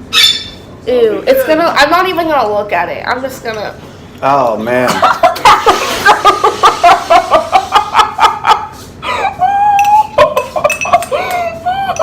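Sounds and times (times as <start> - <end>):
high-pitched laughter: 5.4 - 12.0.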